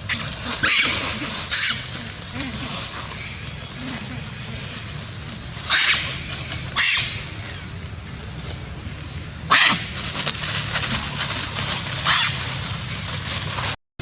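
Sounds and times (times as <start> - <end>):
low background noise: 0.0 - 13.8
shrill animal cries: 0.1 - 7.2.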